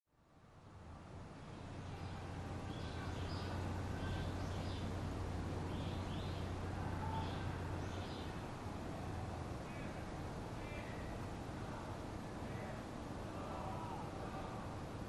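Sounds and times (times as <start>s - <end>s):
steady low hum: 0.2s - 15.0s
small birds chirping: 1.3s - 12.9s.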